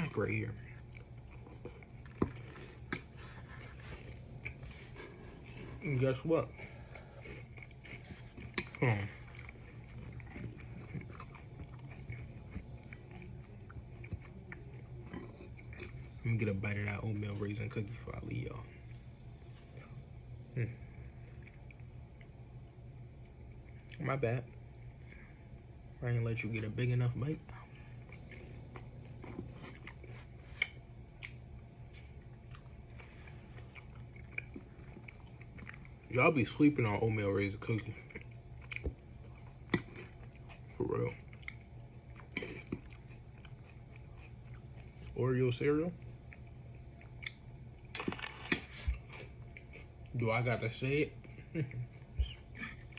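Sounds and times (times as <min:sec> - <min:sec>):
person chewing crunchy food: 0:00.0 - 0:18.0, 0:27.5 - 0:45.2, 0:46.0 - 0:50.2
steady low hum: 0:00.0 - 0:52.9.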